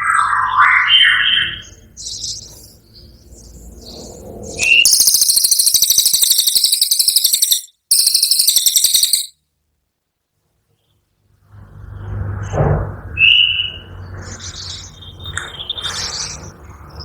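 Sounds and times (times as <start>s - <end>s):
songbird trilling: 4.6s - 9.3s.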